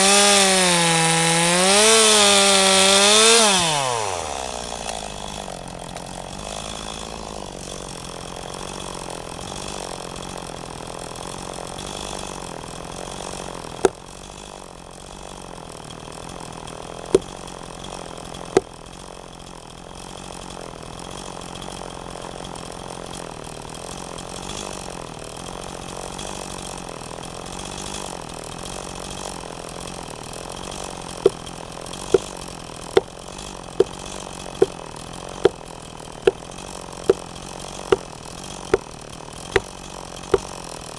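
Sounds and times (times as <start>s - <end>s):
engine running: 30.5s - 40.9s.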